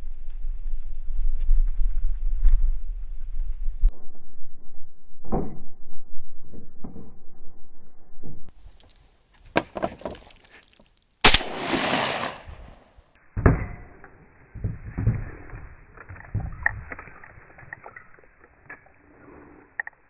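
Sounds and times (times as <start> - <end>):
shotgun shot: 11.2 - 12.8.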